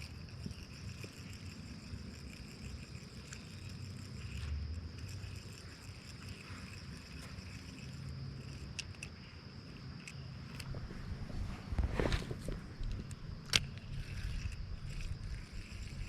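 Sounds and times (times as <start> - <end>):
insects buzzing: 0.0 - 16.0
faint clicks: 0.8 - 9.2
low rumble: 10.6 - 16.0.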